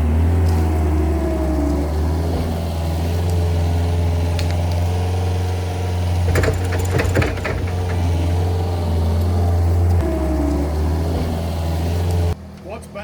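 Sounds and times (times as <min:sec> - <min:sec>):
skid steer engine running: 0:00.0 - 0:12.7
knocks and rattles: 0:06.0 - 0:10.0.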